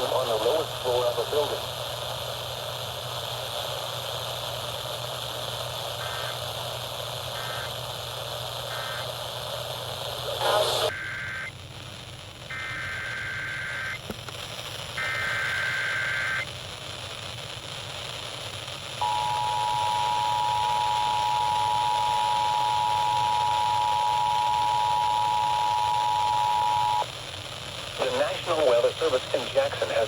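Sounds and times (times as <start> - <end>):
radio hiss: 0.0 - 30.0
screeching digital data tones: 12.5 - 14.0
two-tone attention signal: 19.0 - 27.0.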